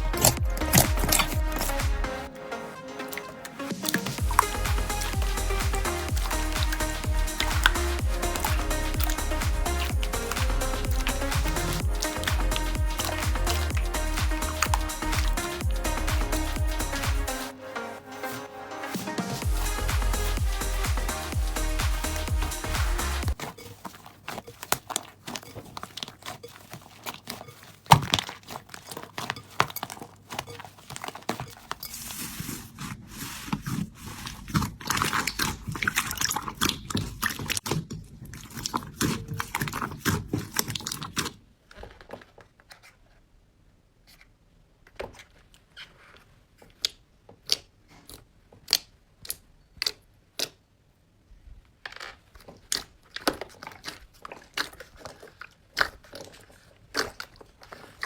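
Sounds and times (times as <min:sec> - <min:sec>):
crunchy slime crackling and popping: 0:21.4 - 0:31.7, 0:33.2 - 0:41.4, 0:51.9 - 0:58.0.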